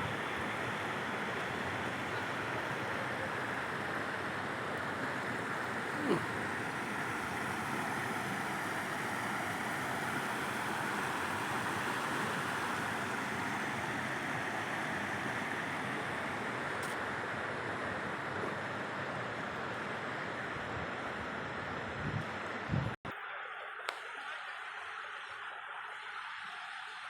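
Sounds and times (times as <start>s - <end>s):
waterfall roaring: 0.0s - 22.7s
wind buffeting microphone: 21.8s - 23.0s.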